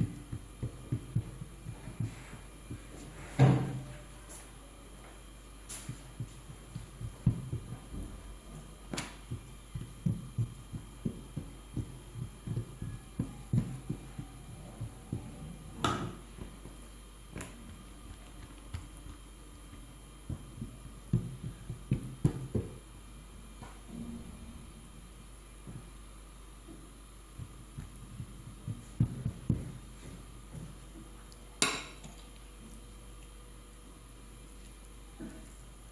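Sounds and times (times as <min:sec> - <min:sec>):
faint steady hum: 0:00.0 - 0:35.9
soft thuds and knocks: 0:05.9 - 0:08.3, 0:08.9 - 0:16.6, 0:27.4 - 0:30.8.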